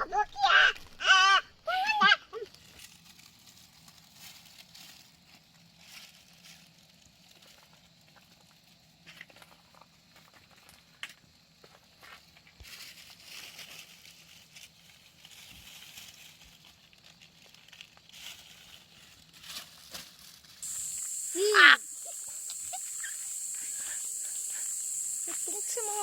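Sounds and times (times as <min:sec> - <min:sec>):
high insect drone: 0:20.6 - 0:26.0.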